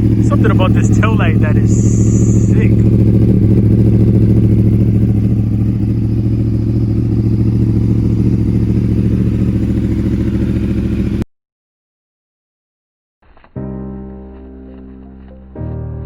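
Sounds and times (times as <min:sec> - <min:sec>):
motorcycle engine idling: 0:00.0 - 0:11.2.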